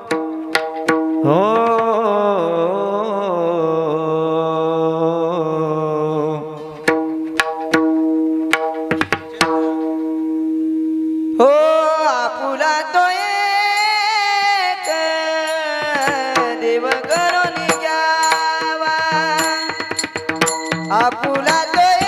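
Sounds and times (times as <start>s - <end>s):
tabla strokes: 0.0s - 2.2s, 6.6s - 11.4s, 15.5s - 22.0s.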